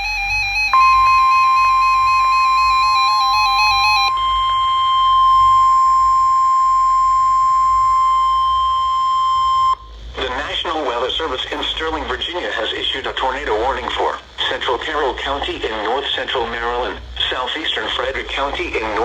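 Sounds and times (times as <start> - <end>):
steady high-pitched alarm tone: 0.0 - 9.9
warbling electronic alert tone: 0.7 - 9.8.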